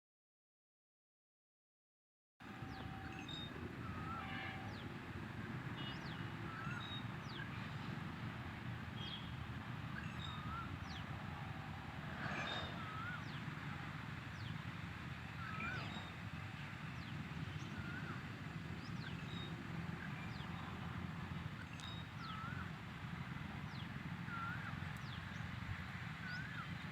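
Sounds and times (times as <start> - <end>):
bird wavering call: 2.6 - 4.8, 5.8 - 7.6, 9.0 - 14.6, 15.3 - 20.9, 21.6 - 22.8, 23.7 - 25.2
birds calling: 5.7 - 26.9
steady low rumble: 7.1 - 25.8.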